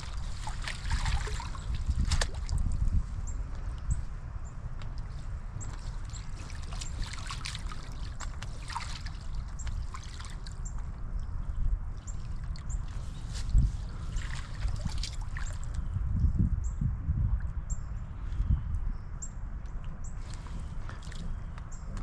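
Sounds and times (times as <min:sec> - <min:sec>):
water splashing and trickling: 0:00.0 - 0:03.1, 0:04.9 - 0:10.9, 0:12.0 - 0:15.8
steady low rumble: 0:00.0 - 0:22.0.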